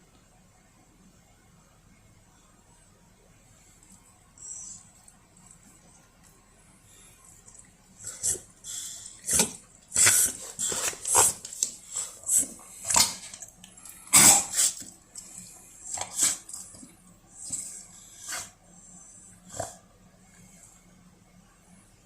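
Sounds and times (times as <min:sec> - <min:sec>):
dog sneezing: 0:14.1 - 0:14.8, 0:16.0 - 0:16.5.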